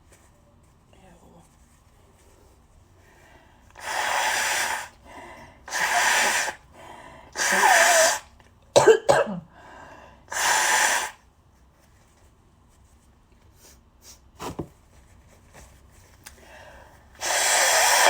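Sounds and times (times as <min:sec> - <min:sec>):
short breaths: 0:03.0 - 0:08.2, 0:09.5 - 0:11.2, 0:16.4 - 0:18.0
person blowing congested nose: 0:03.8 - 0:05.0, 0:05.6 - 0:06.7, 0:07.3 - 0:08.3, 0:10.3 - 0:11.2, 0:17.2 - 0:18.0.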